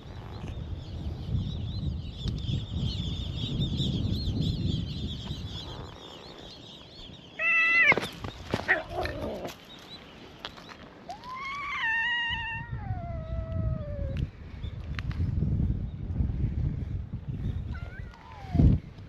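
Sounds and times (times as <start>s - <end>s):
cat meowing: 7.4s - 8.0s, 11.1s - 14.2s.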